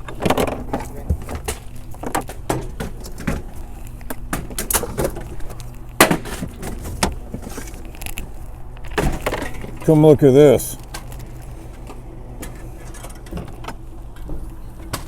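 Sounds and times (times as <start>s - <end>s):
food containers knocking and clattering: 0.0s - 7.7s
low steady hum: 0.0s - 15.0s.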